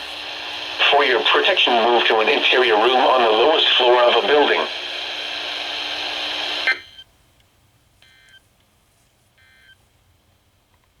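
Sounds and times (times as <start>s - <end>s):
radio static hiss: 0.0s - 7.0s.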